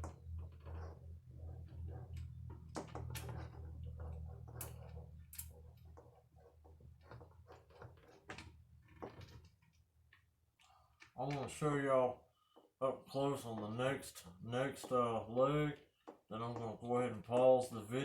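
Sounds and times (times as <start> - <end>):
low steady hum: 0.0 - 7.7.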